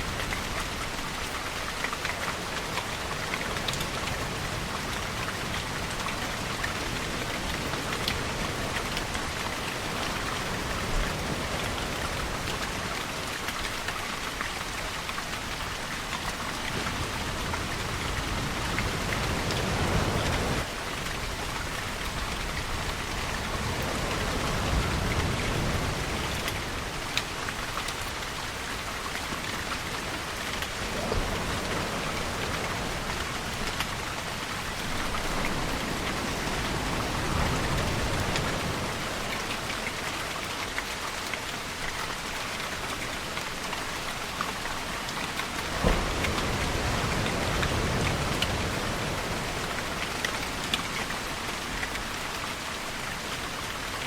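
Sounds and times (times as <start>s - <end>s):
steady rainfall: 0.0s - 54.0s
rain drop ticks: 0.1s - 10.6s.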